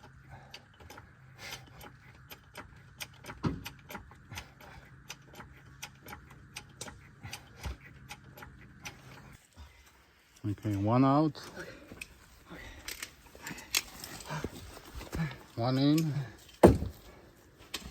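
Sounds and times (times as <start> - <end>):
faint clicks and knocks: 0.0 - 10.8.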